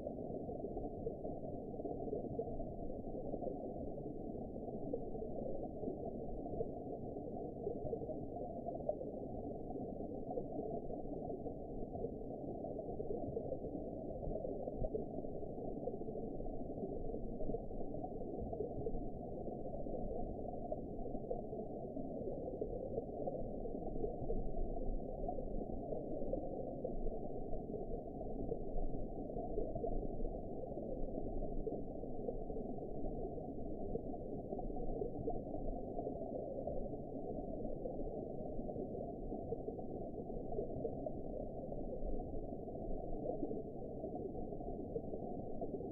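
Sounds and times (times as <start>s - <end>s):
underwater wash of water: 0.0s - 45.9s.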